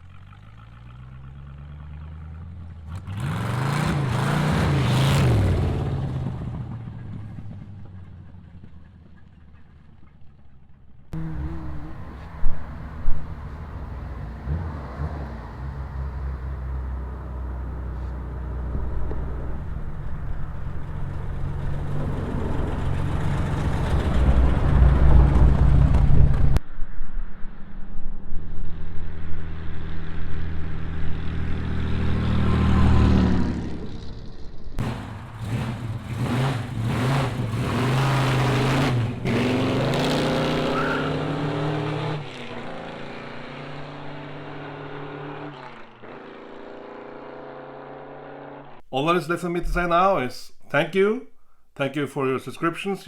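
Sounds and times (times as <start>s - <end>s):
engine revving: 0.0s - 7.9s, 11.1s - 26.6s, 28.5s - 48.8s
hot rod engine exhaust rumble: 0.0s - 40.7s.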